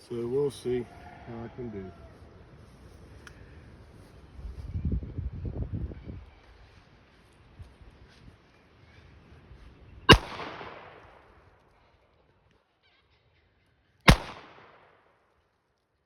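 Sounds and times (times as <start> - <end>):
wind rumble on microphone: 3.4 - 8.4
revolver shots with echo: 10.1 - 11.0, 14.1 - 14.8.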